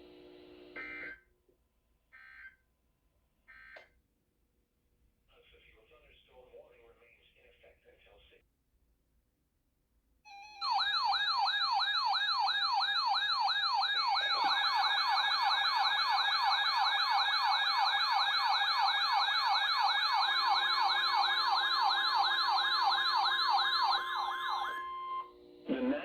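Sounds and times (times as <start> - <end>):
yelping siren alert tone: 10.3 - 25.2
steady high tone: 10.3 - 26.0.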